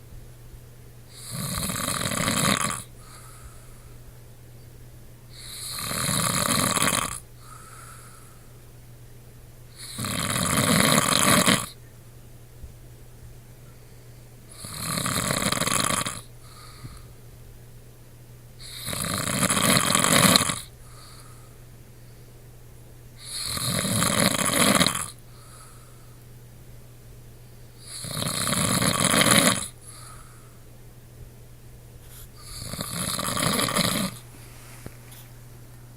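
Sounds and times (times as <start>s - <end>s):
man snoring: 1.2s - 2.9s, 5.4s - 7.7s, 9.8s - 11.8s, 14.5s - 16.3s, 18.6s - 21.3s, 23.2s - 25.6s, 27.8s - 30.2s, 32.4s - 34.2s.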